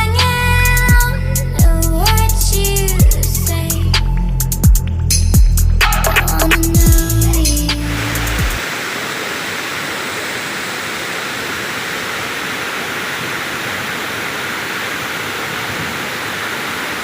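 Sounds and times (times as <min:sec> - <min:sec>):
music track: 0:00.1 - 0:08.6
waterfall rushing: 0:07.6 - 0:17.0.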